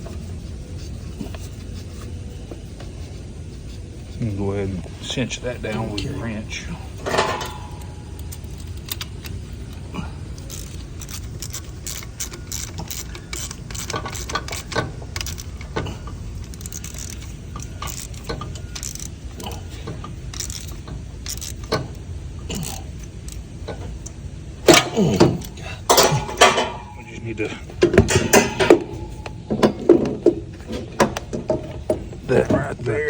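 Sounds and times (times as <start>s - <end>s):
steady low hum: 0.0s - 33.0s
wrench clicking on metal: 7.0s - 27.0s.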